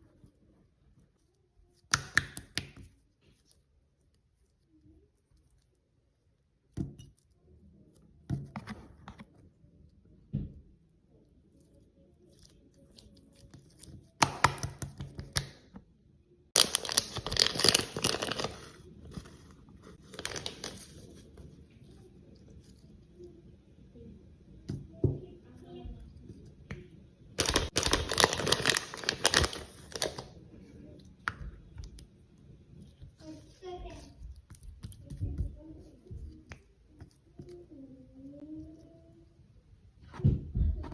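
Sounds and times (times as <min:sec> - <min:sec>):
crinkly material crackling: 0:16.5 - 0:23.4, 0:27.4 - 0:39.4.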